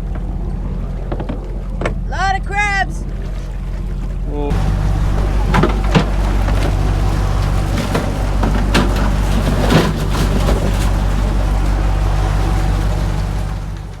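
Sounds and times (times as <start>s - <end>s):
gear knocking on deck: 0.0s - 2.6s, 4.5s - 11.6s
boat engine running: 0.0s - 14.0s.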